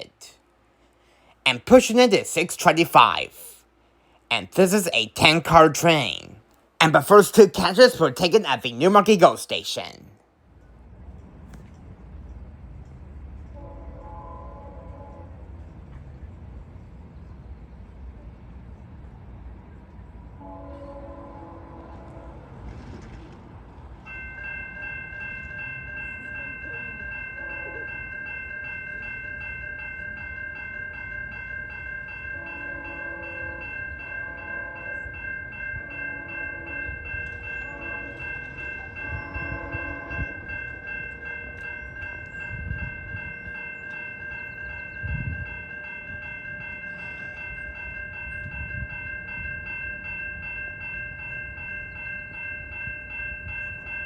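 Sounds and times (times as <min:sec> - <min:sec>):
train rumbling past: 0:10.5 - 0:54.0
train chime horn blasts: 0:13.6 - 0:15.5, 0:20.4 - 0:22.6, 0:26.6 - 0:29.5, 0:32.1 - 0:43.5
steady high-pitched ringing: 0:24.1 - 0:54.0.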